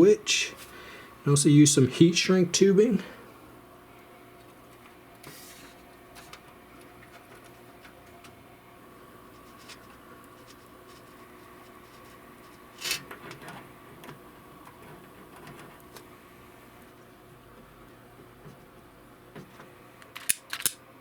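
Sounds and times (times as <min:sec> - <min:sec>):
low room hum: 0:00.0 - 0:21.0
rustle or scrape: 0:05.2 - 0:06.3
small tools clicking: 0:20.0 - 0:20.8.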